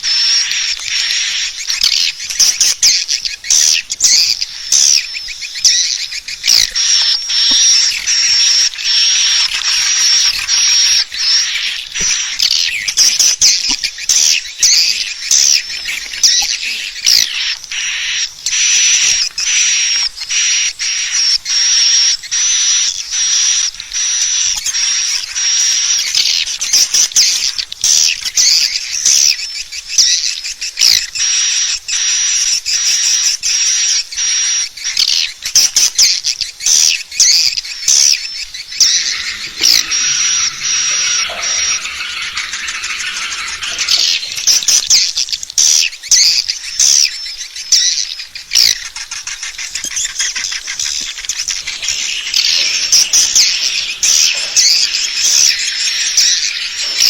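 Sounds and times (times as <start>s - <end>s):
swiftlets twittering: 0.1s - 19.6s, 38.2s - 45.4s, 49.0s - 57.0s
thin high trilling: 38.8s - 45.1s, 51.3s - 57.0s.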